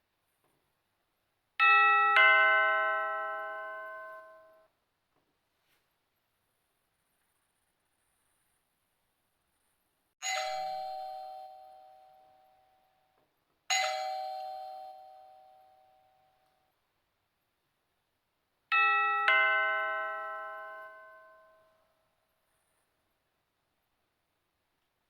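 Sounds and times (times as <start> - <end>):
doorbell chime: 1.6 - 4.7, 10.2 - 16.5, 18.7 - 22.0
two-note ding-dong doorbell: 1.6 - 4.7, 10.2 - 16.4, 18.7 - 22.0.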